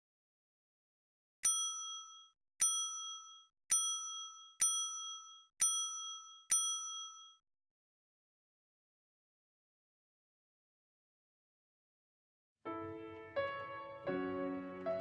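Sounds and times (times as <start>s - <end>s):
bell-like ding: 1.4s - 7.4s.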